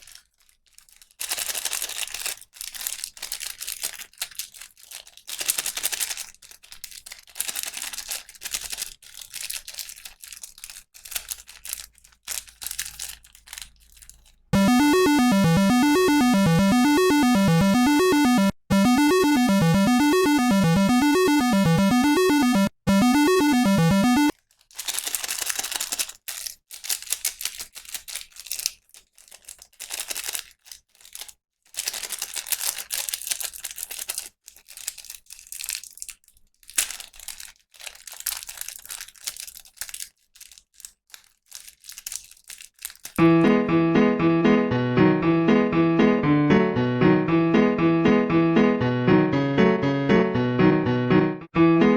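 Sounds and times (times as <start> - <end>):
packaging crinkling and tearing: 0.0 - 14.5, 24.4 - 43.2
electric piano music: 14.6 - 24.3, 43.2 - 51.9.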